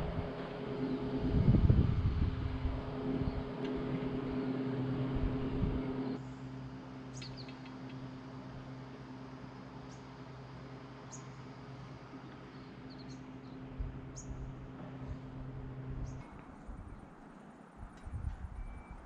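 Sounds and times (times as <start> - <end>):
wind rumbling on microphone: 0.0 - 6.2, 13.6 - 19.0
chairlift mechanical hum: 0.0 - 19.0.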